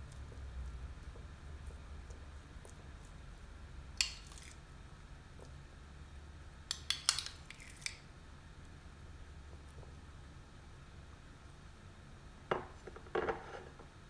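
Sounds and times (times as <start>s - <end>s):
utensil clinking on baking dish: 6.7s - 7.9s.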